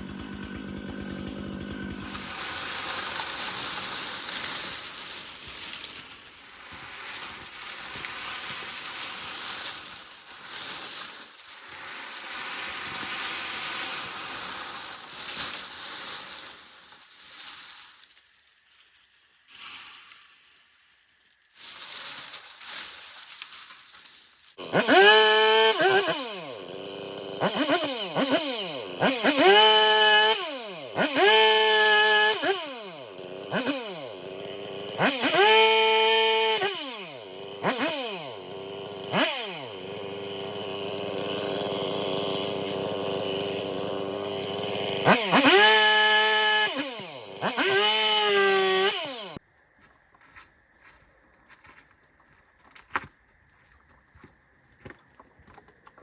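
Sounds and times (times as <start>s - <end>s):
chainsaw revving and idling: 0.0s - 17.0s, 24.6s - 49.4s.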